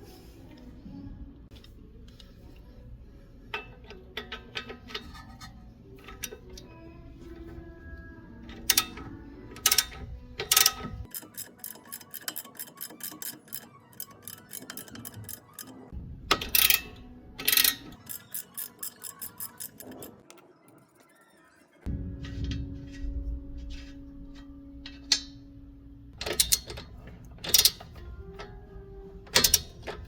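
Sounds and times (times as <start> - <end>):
ratchet wrench clicking: 8.6 - 15.7, 16.3 - 20.2, 26.2 - 28.1, 29.3 - 30.0.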